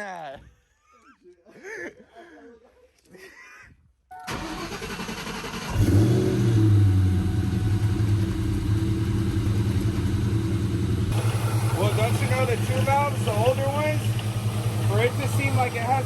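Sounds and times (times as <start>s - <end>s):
car engine cranking: 4.3s - 16.0s
car engine idling: 4.3s - 16.0s.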